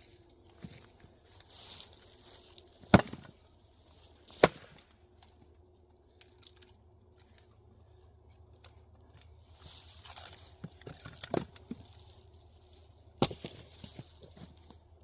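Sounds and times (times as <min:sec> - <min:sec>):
axe splitting firewood: 0:02.8 - 0:03.5, 0:04.3 - 0:04.9, 0:10.0 - 0:11.9, 0:13.2 - 0:14.8.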